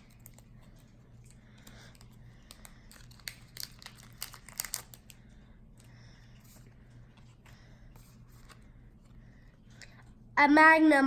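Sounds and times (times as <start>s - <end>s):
card pack wrapper crinkling: 1.6s - 5.2s.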